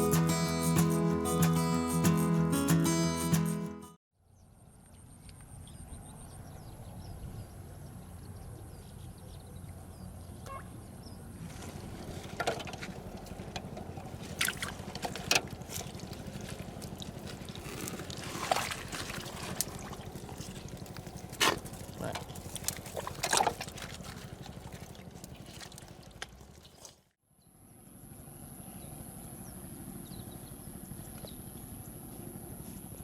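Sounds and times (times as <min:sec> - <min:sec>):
water sloshing and splashing: 0:11.4 - 0:27.1
short sharp splashes: 0:14.2 - 0:27.0.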